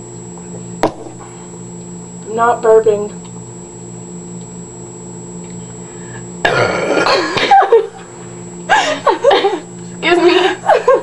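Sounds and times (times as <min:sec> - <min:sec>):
person burping loudly: 0:06.4 - 0:07.4.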